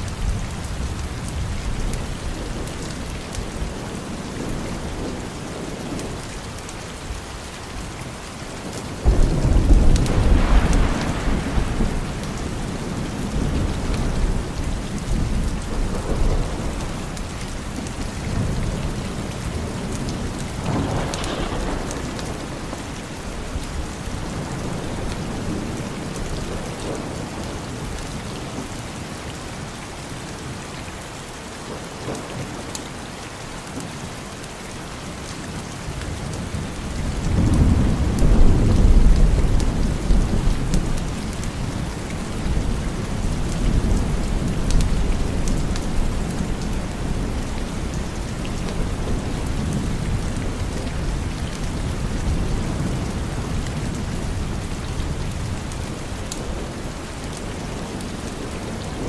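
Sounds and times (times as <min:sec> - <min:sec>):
steady rain: 0:00.0 - 0:59.0
thunder rumbling: 0:09.0 - 0:28.0, 0:36.6 - 0:59.0.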